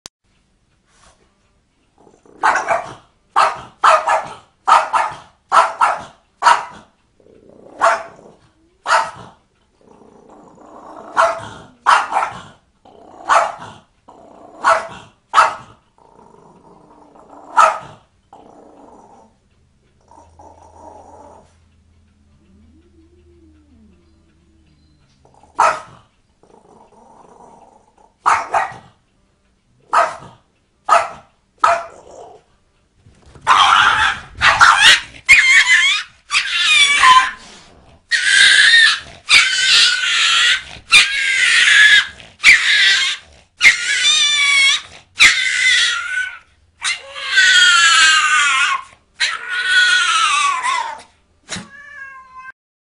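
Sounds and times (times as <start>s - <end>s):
dog making meow-like cries: 33.5s - 37.4s, 38.1s - 52.5s.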